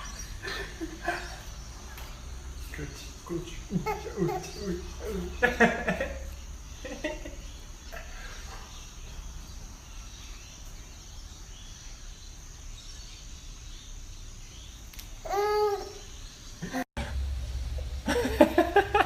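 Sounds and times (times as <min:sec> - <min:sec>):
low background hum: 0:00.0 - 0:14.8, 0:15.4 - 0:19.0.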